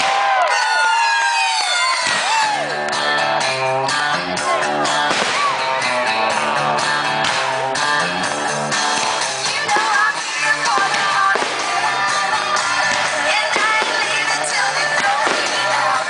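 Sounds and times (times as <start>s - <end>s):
rock music with guitar: 2.1s - 16.0s
person singing: 3.9s - 7.2s, 8.7s - 16.0s.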